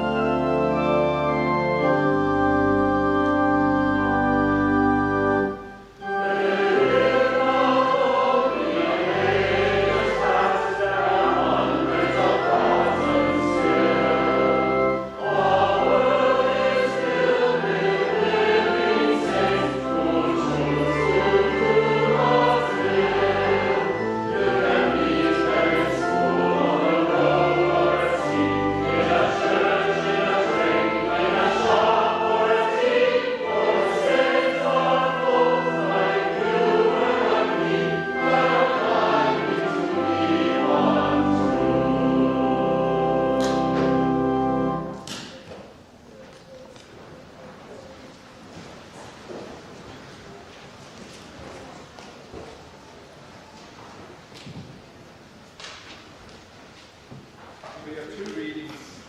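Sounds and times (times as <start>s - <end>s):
church choir singing: 0.0s - 45.4s
organ: 0.0s - 45.4s.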